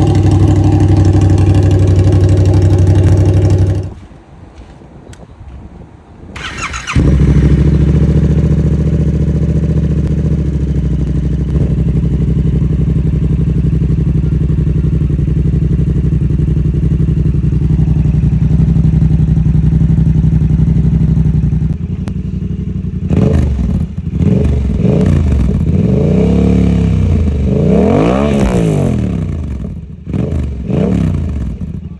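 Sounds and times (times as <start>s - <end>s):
motorcycle engine idling: 0.0s - 4.0s, 6.4s - 27.6s, 28.2s - 31.9s
motorcycle engine revving: 0.0s - 4.0s, 6.4s - 31.9s
motorcycle starter cranking: 6.4s - 7.8s.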